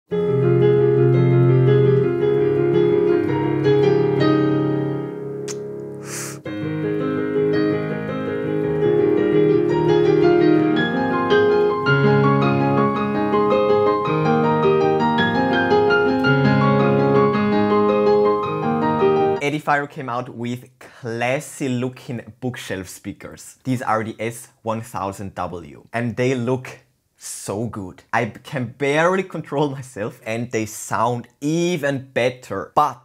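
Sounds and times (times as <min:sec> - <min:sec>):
piano-led music: 0:00.1 - 0:19.8.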